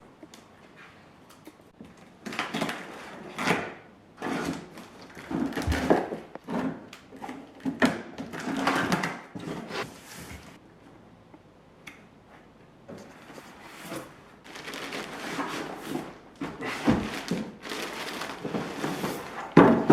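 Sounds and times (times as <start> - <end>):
packaging rustling and scraping: 13.0 - 19.9.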